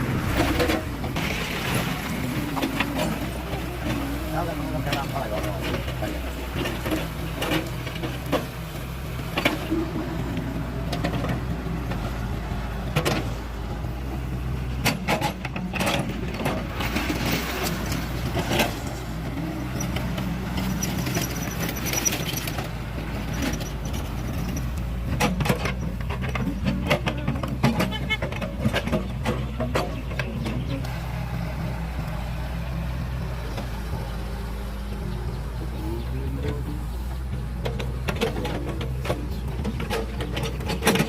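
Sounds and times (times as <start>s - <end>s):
engine running: 0.0s - 41.0s
clanks and knocks: 4.7s - 12.0s, 14.7s - 19.0s, 19.7s - 31.0s, 36.4s - 41.0s.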